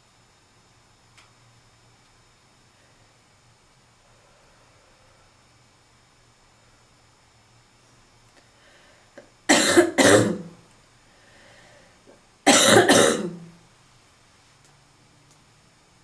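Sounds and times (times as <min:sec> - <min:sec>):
person coughing: 0:09.5 - 0:10.5, 0:12.5 - 0:13.5.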